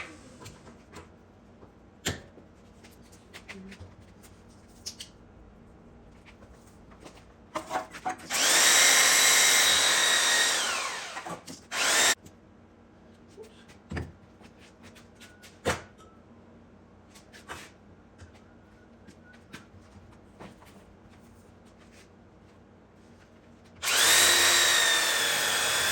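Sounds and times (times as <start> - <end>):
electric power sander: 8.4 - 12.2, 23.8 - 25.9.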